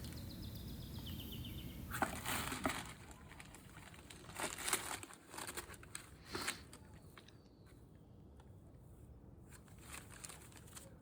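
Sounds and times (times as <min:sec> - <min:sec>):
paper crinkling: 0:01.9 - 0:07.8, 0:09.4 - 0:11.0.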